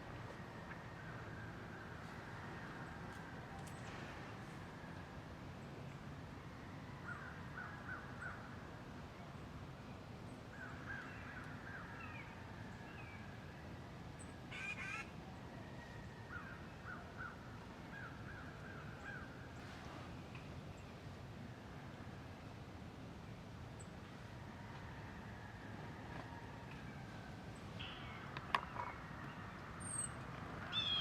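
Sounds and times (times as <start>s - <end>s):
faint bird calls: 27.8s - 31.0s.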